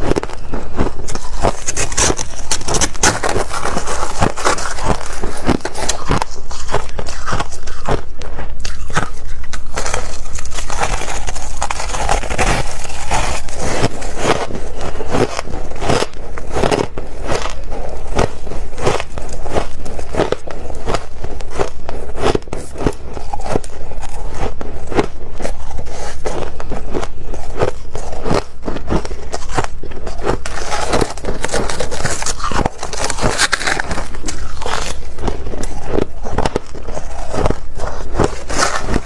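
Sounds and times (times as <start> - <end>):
frost being chewed crunching: 0.0 - 39.0.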